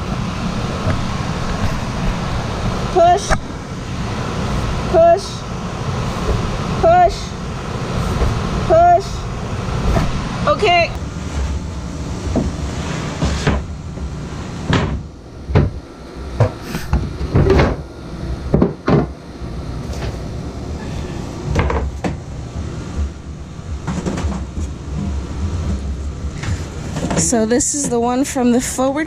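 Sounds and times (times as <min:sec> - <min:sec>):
steady low rumble: 0:00.0 - 0:16.4, 0:17.0 - 0:29.0
knocks and scrapes in cabinetry: 0:12.2 - 0:15.8, 0:16.4 - 0:17.8, 0:18.5 - 0:19.2, 0:20.8 - 0:22.2, 0:22.9 - 0:28.1.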